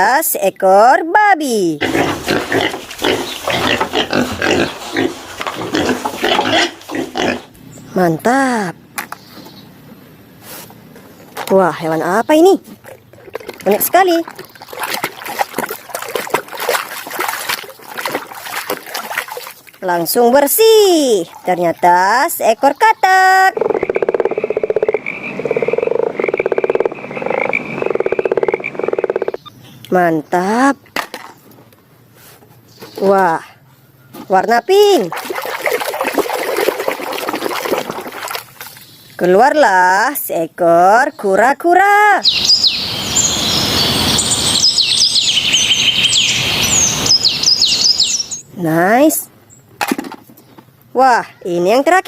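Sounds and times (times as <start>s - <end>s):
pig grunting: 1.8s - 7.6s
frog croak trills: 22.7s - 29.6s.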